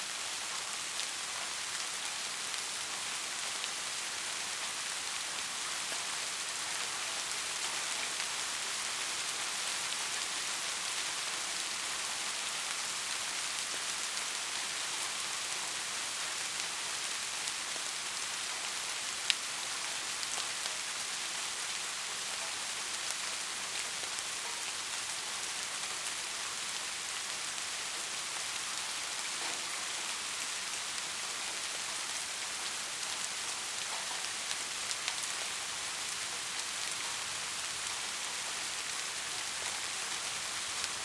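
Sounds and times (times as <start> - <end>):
heavy rain: 0.0 - 41.0.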